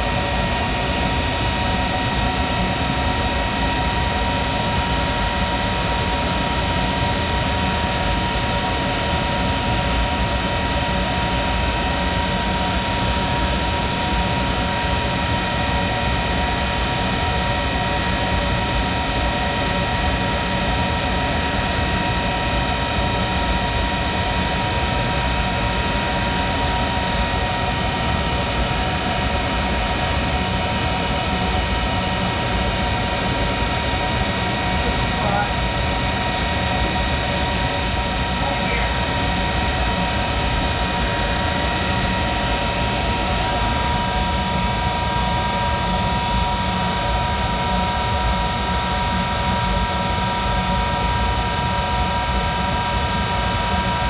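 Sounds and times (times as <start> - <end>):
high whine: 22.6 - 43.8
lathe running: 24.4 - 39.6.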